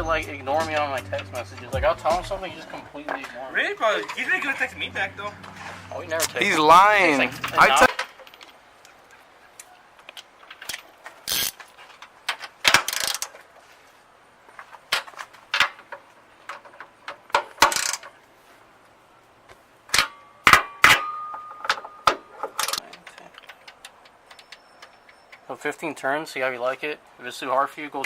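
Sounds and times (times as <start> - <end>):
metal tools clinking and clanking: 0.3 - 8.7, 20.0 - 25.6.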